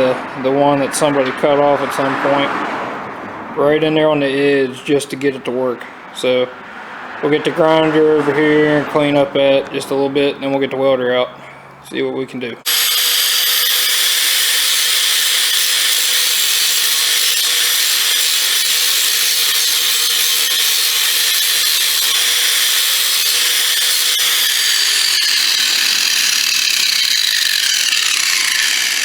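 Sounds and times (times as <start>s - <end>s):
angle grinder whining: 12.7s - 29.0s
grinder disc spinning down: 12.7s - 29.0s.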